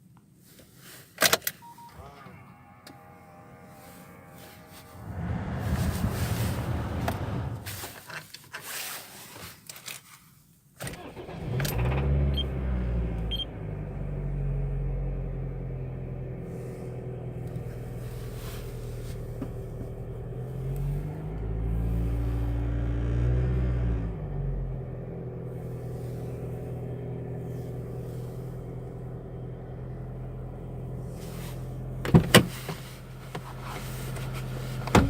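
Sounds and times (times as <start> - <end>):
engine revving: 4.7 - 8.0, 20.0 - 31.2
car engine starting and idling: 4.9 - 8.0, 10.8 - 35.0.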